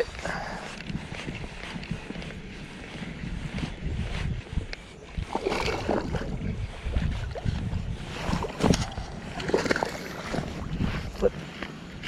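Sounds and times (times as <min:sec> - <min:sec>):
wind buffeting microphone: 0:00.0 - 0:12.0
fish knocking and scraping: 0:05.2 - 0:10.9.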